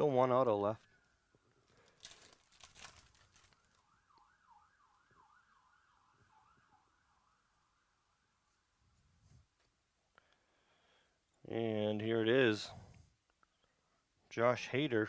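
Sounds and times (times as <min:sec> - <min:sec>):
faint wrapper crinkles and clicks: 0:01.6 - 0:04.3
faint siren wailing: 0:03.0 - 0:09.0.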